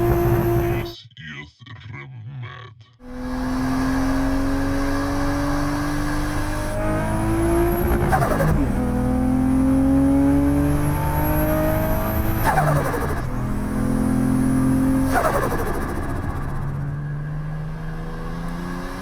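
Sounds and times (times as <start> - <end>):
car engine accelerating hard: 0.0 - 0.9, 3.0 - 19.0
turbo flutter: 7.6 - 8.9, 12.2 - 13.8, 14.8 - 16.9.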